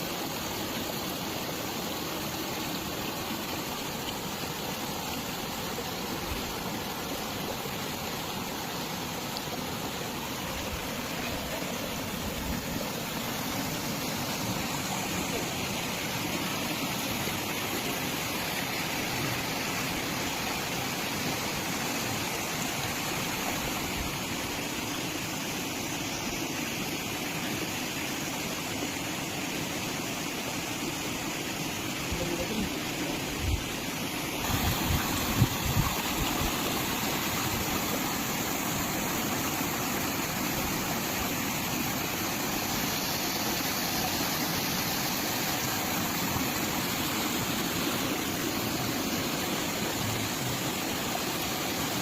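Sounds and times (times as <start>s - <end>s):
waterfall rushing: 0.0s - 52.0s.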